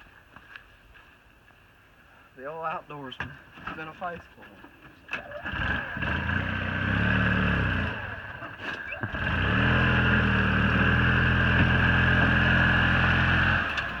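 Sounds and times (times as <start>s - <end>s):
golf cart engine revving: 5.1s - 14.0s.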